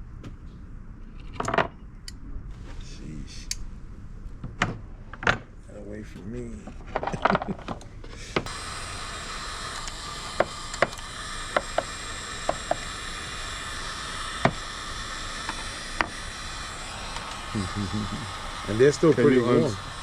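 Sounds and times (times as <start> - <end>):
steady hiss: 5.7 - 20.0.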